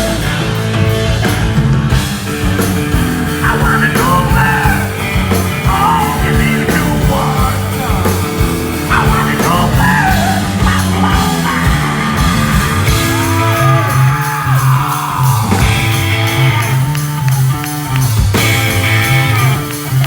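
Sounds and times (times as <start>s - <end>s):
bass guitar: 0.0s - 20.0s
drums: 0.0s - 20.0s
electric guitars: 0.0s - 20.0s
person singing: 3.4s - 17.4s.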